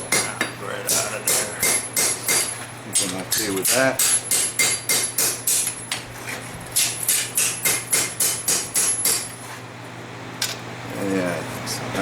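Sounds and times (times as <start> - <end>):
hammer striking steel on anvil: 0.0 - 3.1, 3.7 - 5.8, 6.8 - 9.3
steady low hum: 0.0 - 12.0.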